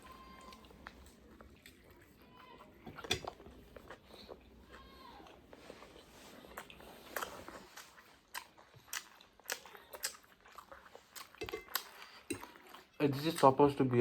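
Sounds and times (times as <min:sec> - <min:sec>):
chewing and crunching food: 0:00.0 - 0:14.0
mouth clicks and crackles: 0:06.5 - 0:13.6.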